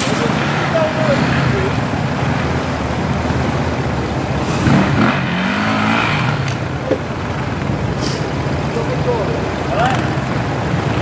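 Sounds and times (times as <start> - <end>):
off-road vehicle engine revving: 0.0 - 11.0.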